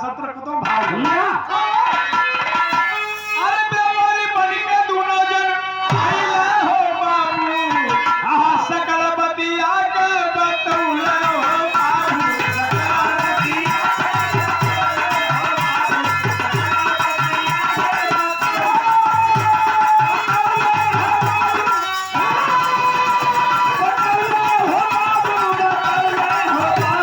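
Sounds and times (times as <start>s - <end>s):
harmonium melody: 1.6s - 27.0s
dholak bass strokes: 10.7s - 27.0s.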